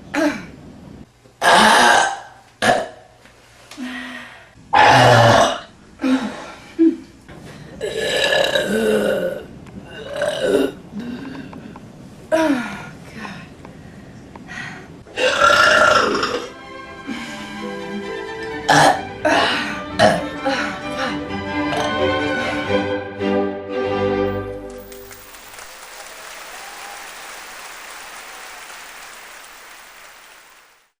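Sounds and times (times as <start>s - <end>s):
woman burping: 1.4s - 3.0s, 4.8s - 5.7s, 7.8s - 10.8s, 15.2s - 16.5s, 18.7s - 20.3s, 21.7s - 22.0s
orchestral string music: 16.3s - 25.2s
audience applauding: 24.7s - 31.0s.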